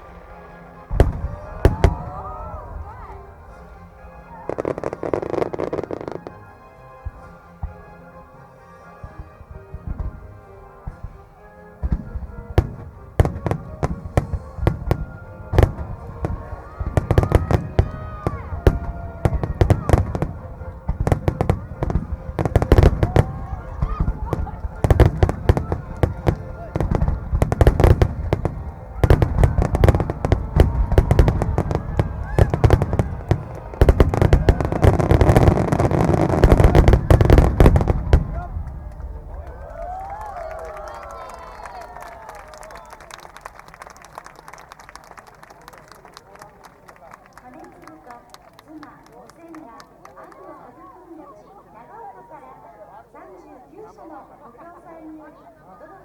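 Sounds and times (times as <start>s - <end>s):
fireworks booming: 0.0s - 8.0s, 9.1s - 40.8s.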